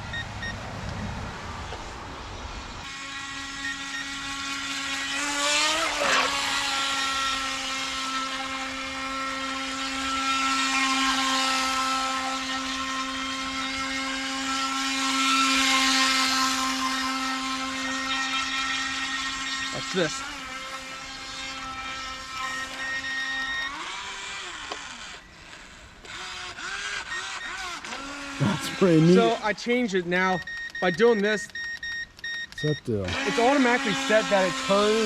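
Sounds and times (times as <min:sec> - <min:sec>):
toy boat electric motor whining: 0:02.8 - 0:35.0.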